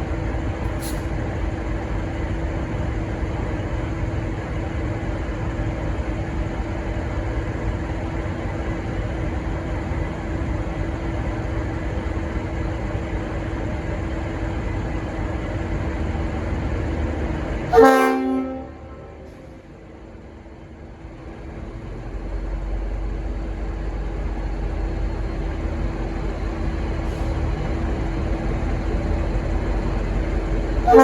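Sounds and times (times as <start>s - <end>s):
diesel locomotive rumbling: 0.0s - 31.0s
locomotive horn blast: 17.7s - 19.5s.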